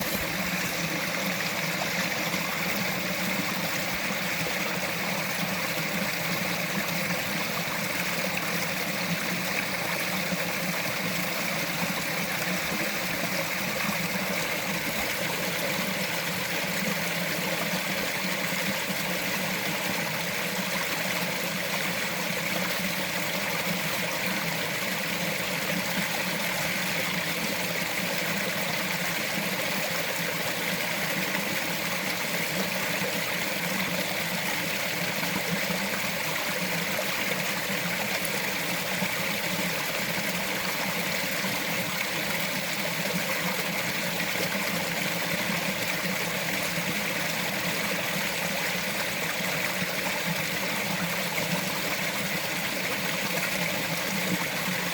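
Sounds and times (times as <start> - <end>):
stream trickling over rocks: 0.0 - 54.9.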